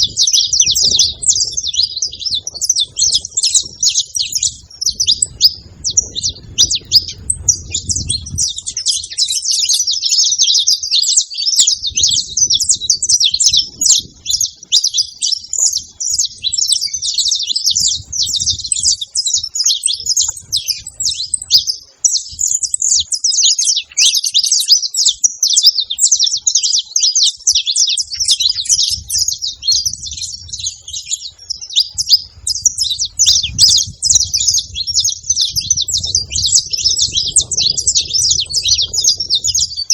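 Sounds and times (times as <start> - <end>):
finch singing rapid chirps and trills: 0.0 - 39.9.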